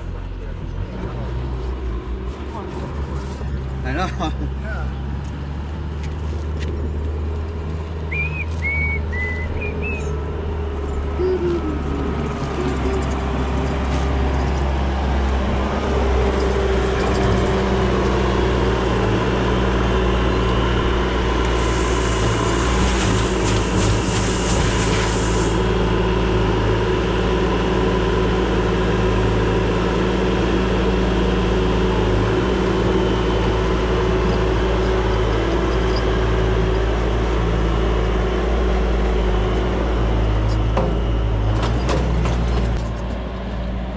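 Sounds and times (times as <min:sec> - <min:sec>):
diesel engine droning: 0:00.0 - 0:43.9
hiss: 0:21.5 - 0:25.7.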